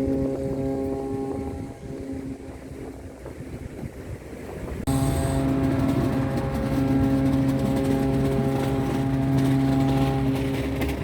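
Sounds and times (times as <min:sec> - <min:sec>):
ship horn blast: 0:00.0 - 0:03.0, 0:04.9 - 0:11.0
sea noise: 0:00.0 - 0:11.0
wind: 0:00.0 - 0:11.0.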